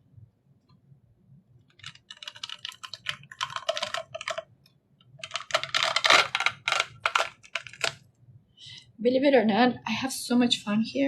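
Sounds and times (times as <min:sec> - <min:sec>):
plastic crackling clicks: 0:01.7 - 0:04.4, 0:05.2 - 0:08.0.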